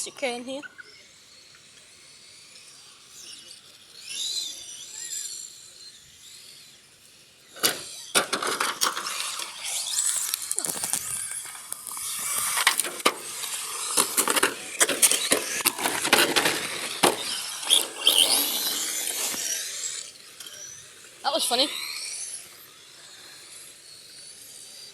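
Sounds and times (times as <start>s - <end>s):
toy car motor noise: 0.0s - 24.9s
tyre squeal: 15.0s - 20.8s.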